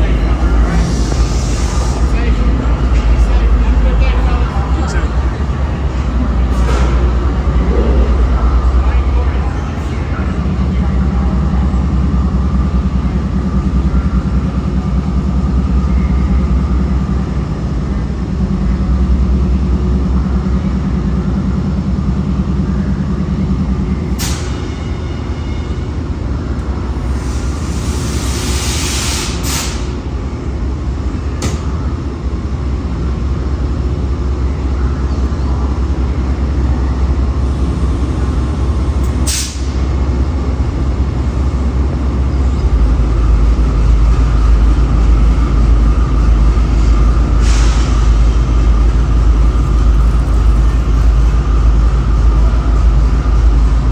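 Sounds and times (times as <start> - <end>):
diesel locomotive engine drone: 0.0 - 53.9
air hissing: 0.6 - 2.3, 27.0 - 30.0, 39.1 - 39.9, 46.7 - 49.1.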